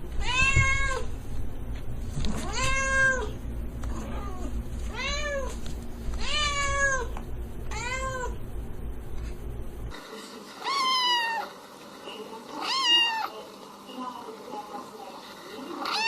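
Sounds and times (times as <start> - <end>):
low background hum: 0.0 - 16.0
cat meowing: 0.2 - 1.1, 4.0 - 5.5, 6.2 - 7.1, 7.7 - 8.4, 10.6 - 11.5, 12.6 - 13.3.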